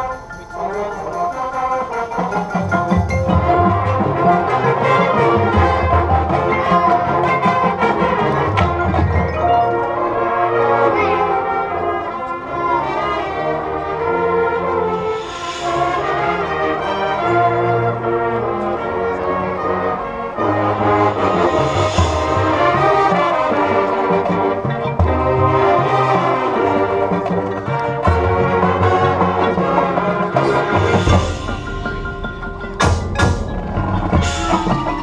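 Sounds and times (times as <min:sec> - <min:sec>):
brass section playing chords: 0:09.5 - 0:34.9.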